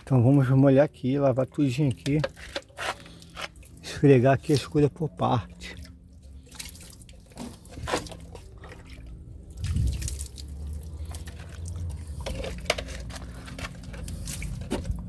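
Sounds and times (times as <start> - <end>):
water dripping and splashing: 0.0 - 15.0
low rumble: 8.6 - 12.3.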